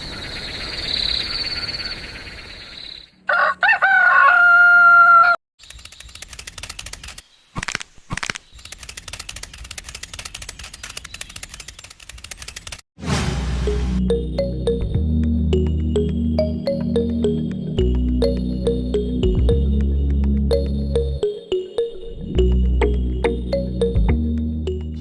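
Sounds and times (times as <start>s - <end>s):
crickets chirping: 0.0s - 3.1s
rooster crowing: 3.2s - 5.4s
rapid clicking: 8.6s - 12.8s.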